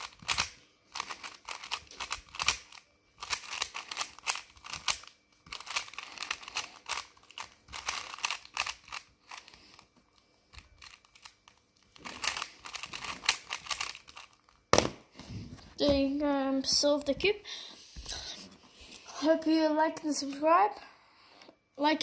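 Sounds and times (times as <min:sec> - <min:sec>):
puzzle cube plastic clicks: 0:00.0 - 0:09.9, 0:10.5 - 0:14.5.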